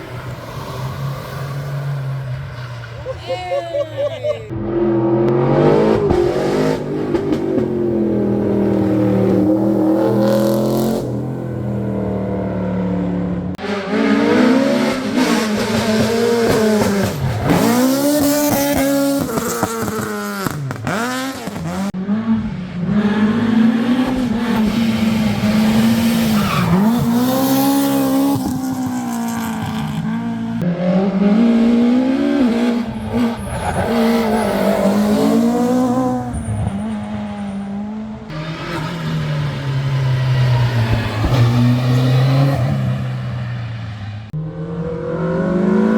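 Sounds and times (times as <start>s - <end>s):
rally car engines at full throttle: 0.0s - 45.9s.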